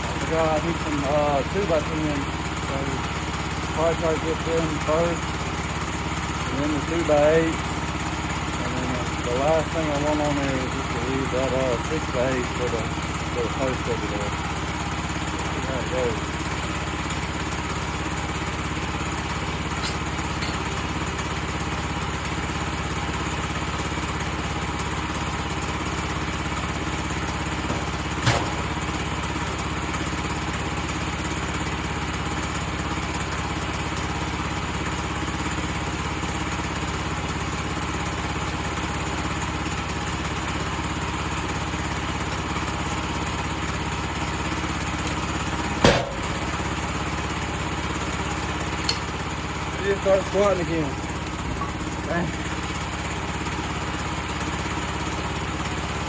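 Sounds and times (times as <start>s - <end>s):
sawmill engine running: 0.0s - 56.0s
sharp knock: 45.8s - 46.4s.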